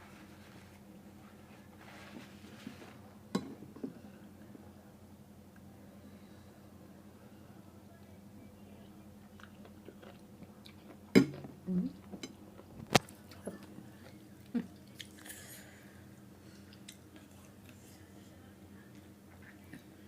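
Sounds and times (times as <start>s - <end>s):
person chewing: 9.4s - 11.0s, 14.4s - 15.6s.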